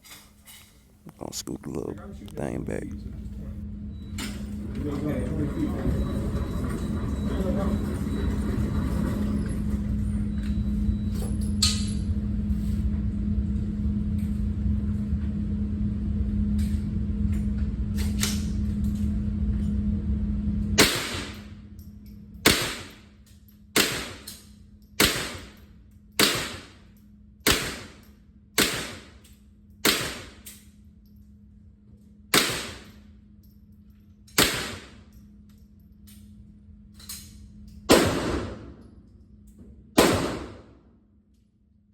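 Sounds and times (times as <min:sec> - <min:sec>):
steady hum: 0:00.8 - 0:03.9
gunshots: 0:28.6 - 0:29.1, 0:32.4 - 0:32.9, 0:34.4 - 0:35.0, 0:37.9 - 0:38.8, 0:40.0 - 0:40.8.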